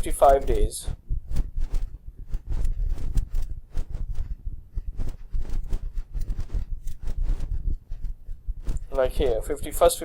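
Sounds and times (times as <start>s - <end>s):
low thumping rumble: 0.8s - 9.6s.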